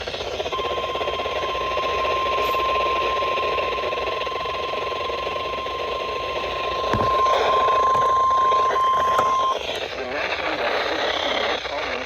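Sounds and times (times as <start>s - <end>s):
steady warning beep: 0.3s - 9.8s.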